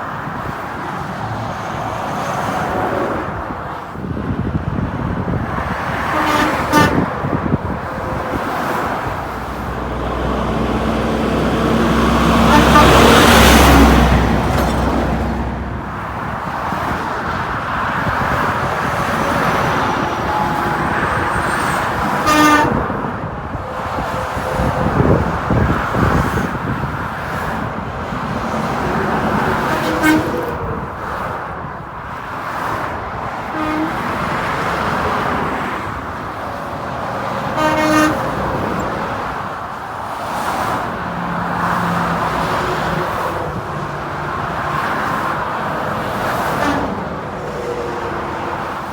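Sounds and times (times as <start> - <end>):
highway road noise: 0.0 - 48.9
short vehicle horn toots: 6.1 - 7.1, 12.4 - 13.3, 20.3 - 22.8, 37.6 - 38.2.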